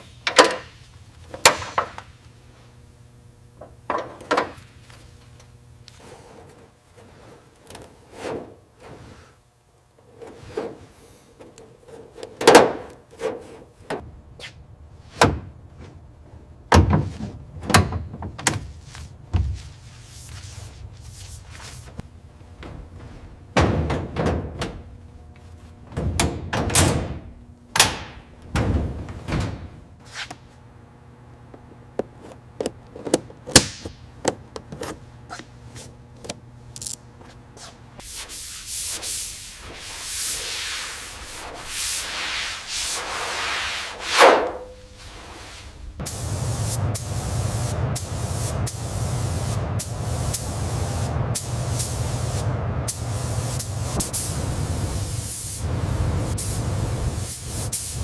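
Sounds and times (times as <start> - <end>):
knocks and heavy thuds: 22.6 - 24.8, 27.8 - 29.8.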